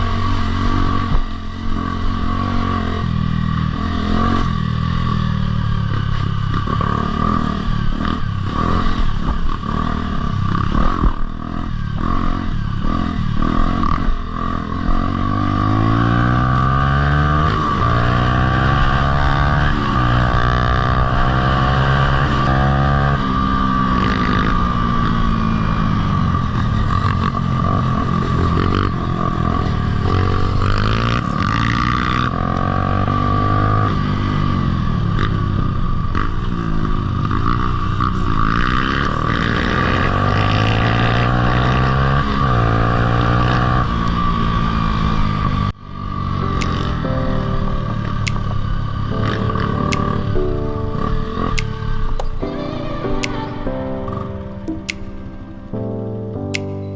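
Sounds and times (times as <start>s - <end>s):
dirt bike engine revving: 0.0s - 26.0s.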